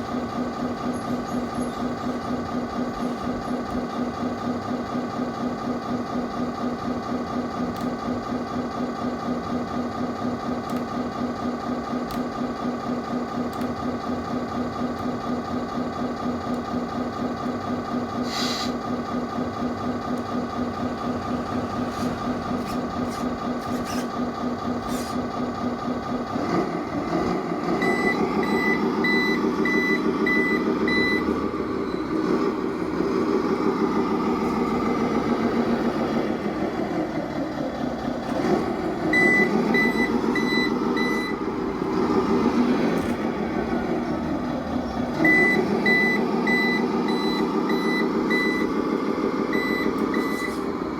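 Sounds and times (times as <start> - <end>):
simulated diesel engine through speaker: 0.0 - 50.9
reversing beeps: 27.8 - 32.2, 39.1 - 41.5, 45.2 - 48.7, 49.5 - 50.7.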